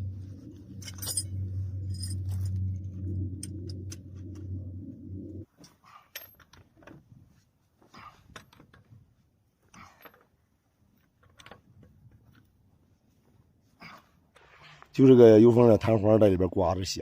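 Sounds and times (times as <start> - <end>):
keys clinking: 0.6 - 4.5.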